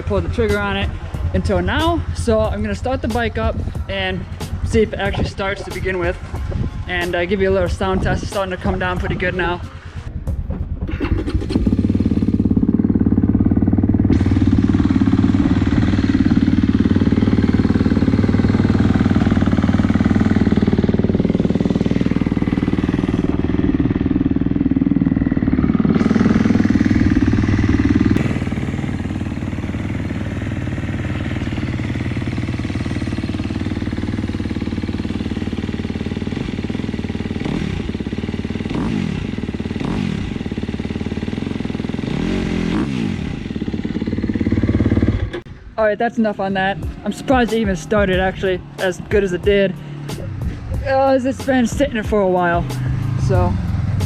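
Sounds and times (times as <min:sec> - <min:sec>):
dirt bike engine: 0:00.0 - 0:54.0.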